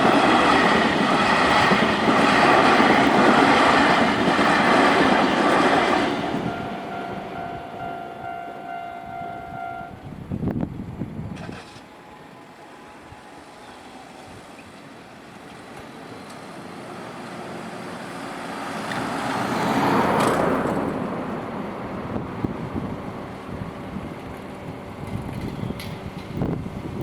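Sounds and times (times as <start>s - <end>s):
road vehicle passing by: 11.5s - 25.0s.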